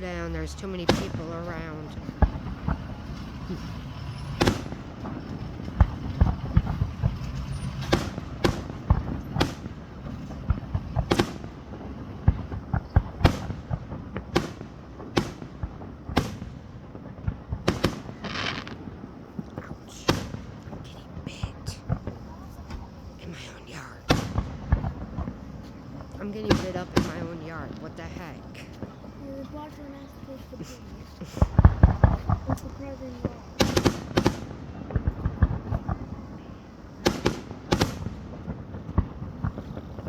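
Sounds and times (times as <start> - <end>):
fireworks shells bursting: 0.0 - 40.0
small firework pops: 3.5 - 20.8, 24.1 - 27.2, 30.7 - 36.4, 37.0 - 40.0.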